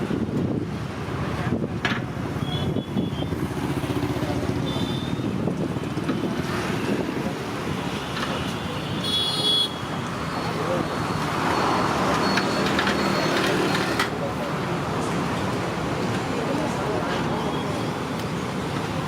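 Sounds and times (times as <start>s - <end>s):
passing traffic rumble: 0.0s - 19.0s.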